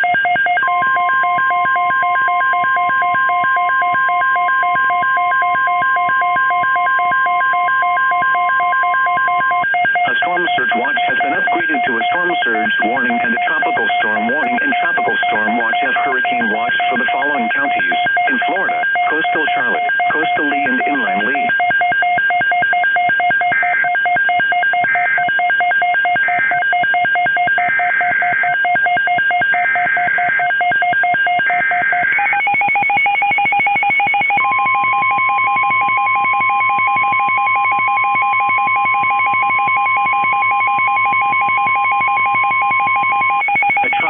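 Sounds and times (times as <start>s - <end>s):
fast pulsing electronic beep: 0.0s - 44.0s
steady warning alarm tone: 0.0s - 44.0s
squawking data bursts: 42.7s - 44.0s.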